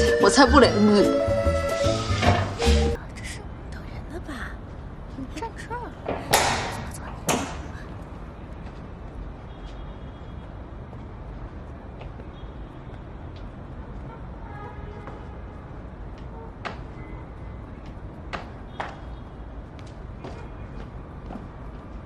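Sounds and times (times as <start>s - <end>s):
sharp knocks: 6.0s - 7.8s.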